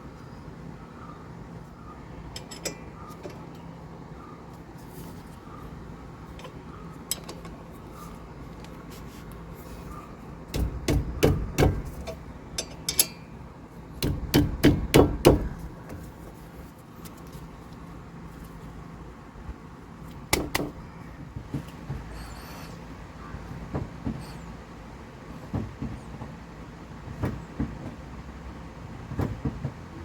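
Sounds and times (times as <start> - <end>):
low steady hum: 0.0 - 23.6
hand tool knocking on car: 10.5 - 12.2, 14.0 - 15.8, 20.3 - 20.8.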